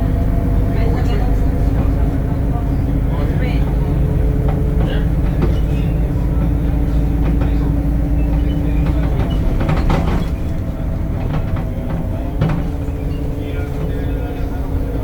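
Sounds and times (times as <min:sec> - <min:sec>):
bus engine rumble: 0:00.0 - 0:15.0
rattles: 0:04.4 - 0:15.0.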